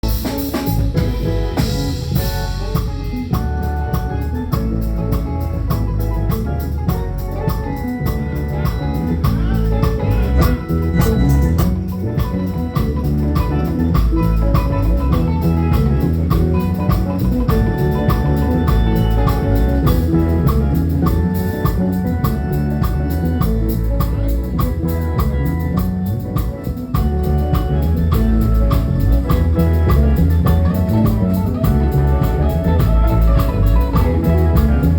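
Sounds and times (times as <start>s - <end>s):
heavy bass line: 0.0s - 34.9s
live band playing: 0.0s - 34.9s
steady drum beat: 0.0s - 34.9s.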